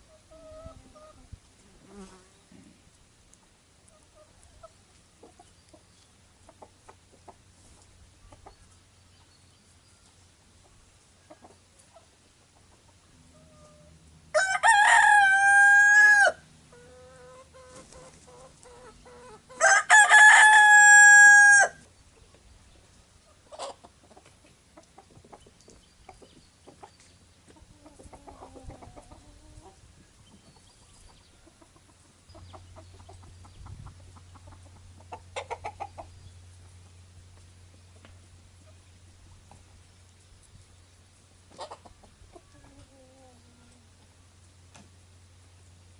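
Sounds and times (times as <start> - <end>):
faint hen clucking: 0.0 - 39.7, 41.5 - 44.6
rooster crowing: 14.3 - 16.4, 19.6 - 21.8.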